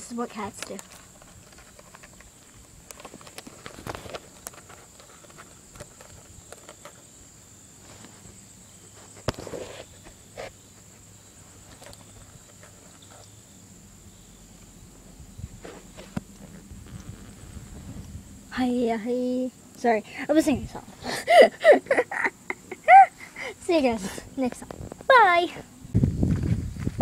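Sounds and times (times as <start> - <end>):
high insect drone: 0.0 - 27.0
soft footsteps and rustles: 7.8 - 13.4, 15.5 - 18.2.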